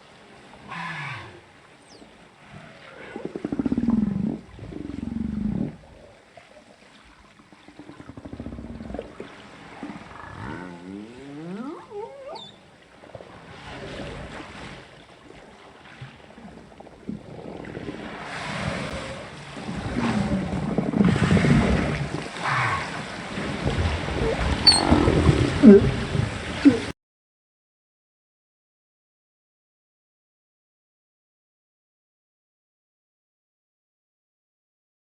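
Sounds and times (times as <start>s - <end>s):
rough whale calls: 0.6s - 6.2s, 7.5s - 12.8s, 16.5s - 26.9s
whale grunting moan: 7.9s - 12.5s, 24.1s - 26.9s
whale rising whoop: 9.9s - 12.6s, 20.0s - 23.1s
short high chirp: 24.7s - 24.9s.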